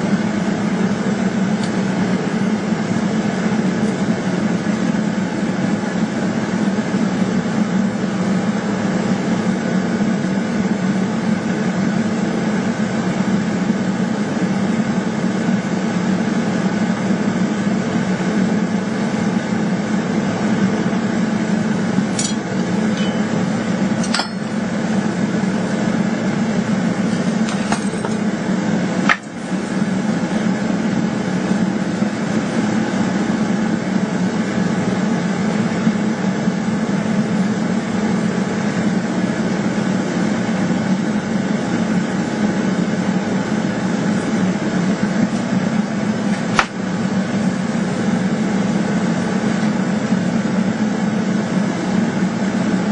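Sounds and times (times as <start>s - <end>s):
workshop equipment roaring: 0.0s - 52.9s
sharp metallic clinks: 22.2s - 23.4s, 24.0s - 24.6s.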